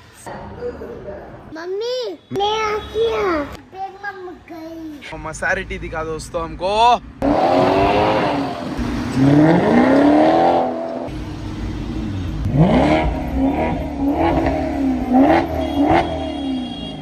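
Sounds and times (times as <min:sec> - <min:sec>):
sports car engine revving: 0:07.2 - 0:16.9.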